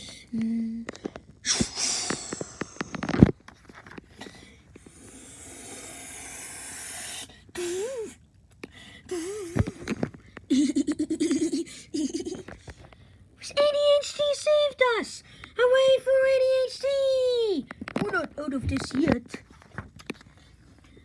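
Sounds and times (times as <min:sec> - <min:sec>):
sneeze-like burst of breath: 0:01.4 - 0:02.7, 0:05.0 - 0:08.2
sliding vocal squeaks: 0:01.4 - 0:03.2
long hissing whoosh: 0:01.5 - 0:02.8, 0:04.9 - 0:08.2
child making vocal sound effects: 0:05.0 - 0:08.2, 0:09.1 - 0:09.8, 0:13.4 - 0:17.6.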